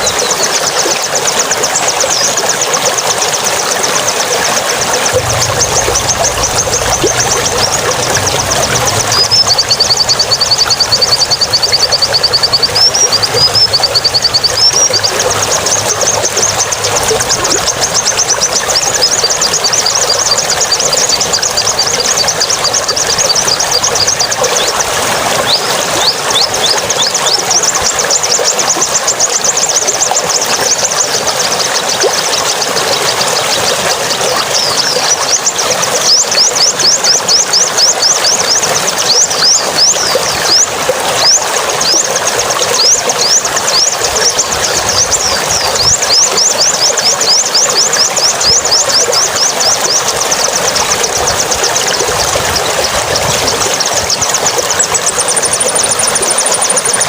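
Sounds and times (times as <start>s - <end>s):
songbird chirping rapidly: 4.8s - 28.5s.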